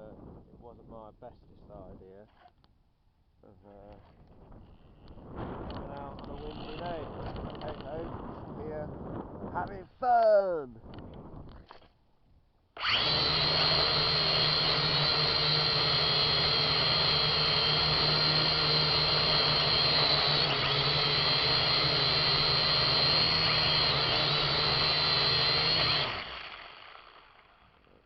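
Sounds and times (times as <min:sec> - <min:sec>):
drone motors whining: 0:12.8 - 0:28.0
low buzz: 0:12.8 - 0:28.0.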